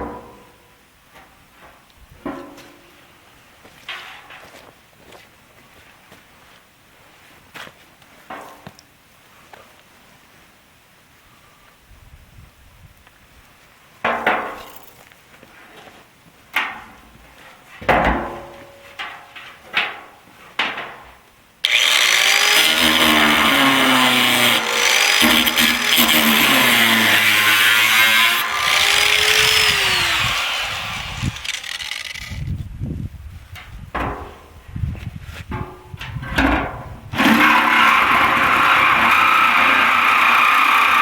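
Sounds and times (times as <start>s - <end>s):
jigsaw cutting through steel: 21.6s - 32.5s, 37.2s - 41.0s.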